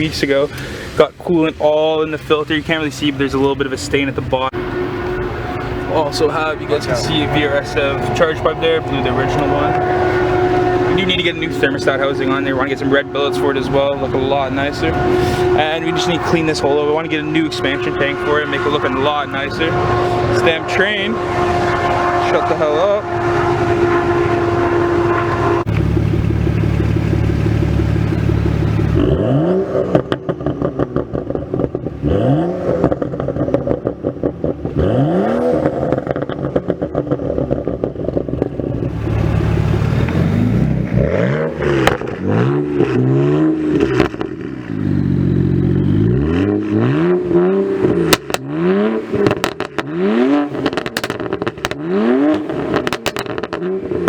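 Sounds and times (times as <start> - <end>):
car exhaust revving with pops: 0.0 - 54.0
train horn: 4.5 - 25.7.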